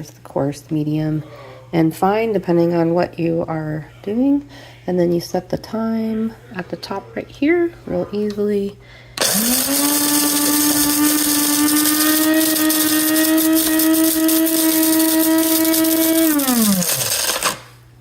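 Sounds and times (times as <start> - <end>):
coffee grinder motor whine: 9.2 - 17.7
coffee beans grinding hiss: 9.2 - 17.8.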